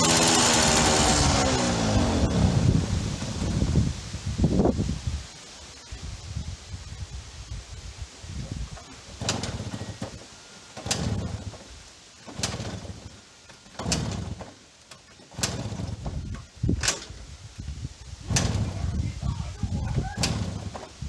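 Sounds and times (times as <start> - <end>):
engine chugging without catching: 0.0 - 4.0, 9.1 - 17.2
motorcycle kick-starter clacking: 8.7 - 17.4, 18.2 - 19.0, 20.0 - 21.0.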